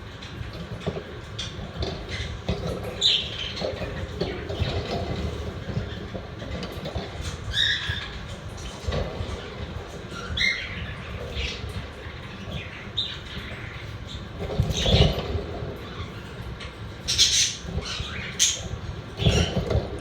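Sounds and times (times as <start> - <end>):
budgerigars chirping and squawking: 0.6 - 6.2, 6.9 - 19.9.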